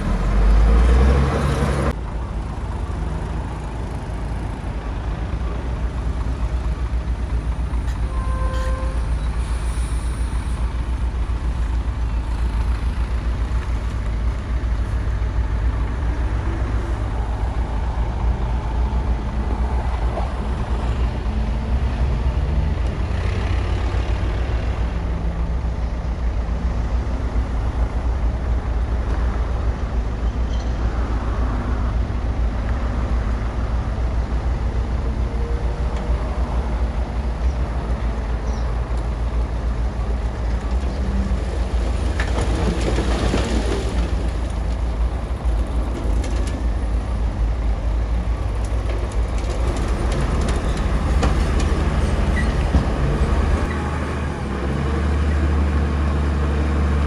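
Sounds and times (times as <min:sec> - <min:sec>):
bulldozer diesel engine rumbling: 0:00.0 - 0:57.0.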